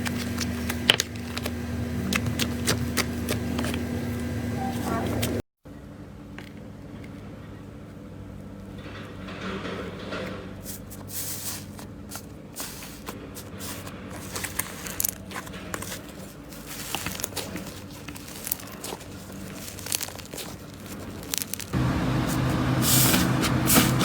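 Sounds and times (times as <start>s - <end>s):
slime squishing and crackling: 12.6s - 21.8s.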